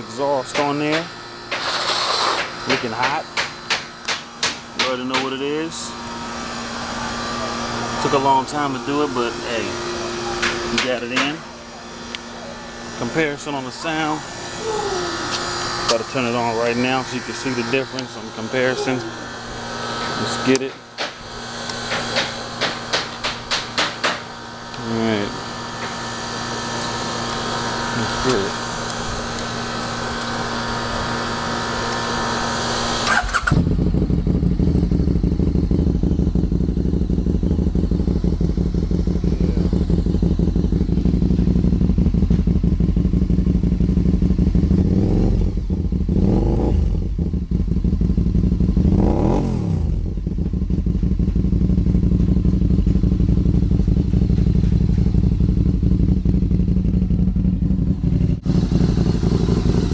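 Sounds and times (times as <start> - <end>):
engine idling and revving: 0.0 - 59.9
starter whir: 12.1 - 59.9.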